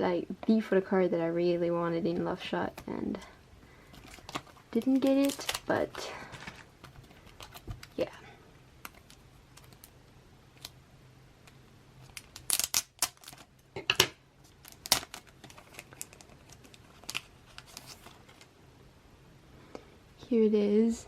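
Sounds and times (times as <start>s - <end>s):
plastic packaging crinkling: 3.8s - 8.2s, 8.8s - 10.8s, 12.0s - 13.6s, 14.4s - 18.5s.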